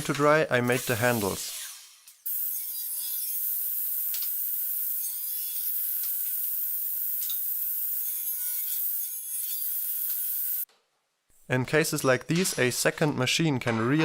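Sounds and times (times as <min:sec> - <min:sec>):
power tool cutting wood: 0:00.1 - 0:10.6.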